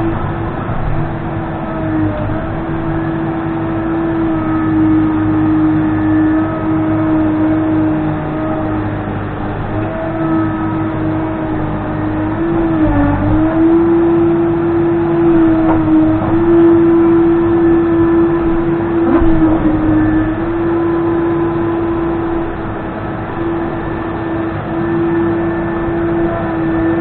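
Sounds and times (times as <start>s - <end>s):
backhoe loader engine high whine: 0.0s - 27.0s.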